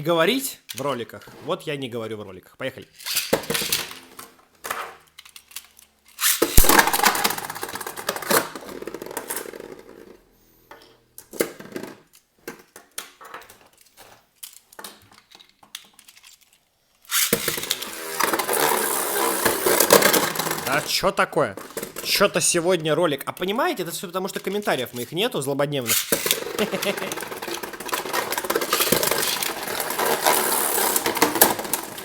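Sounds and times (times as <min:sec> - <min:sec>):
spinning tops clattering: 0:03.0 - 0:04.1, 0:06.1 - 0:10.0, 0:17.1 - 0:22.6, 0:25.8 - 0:32.0.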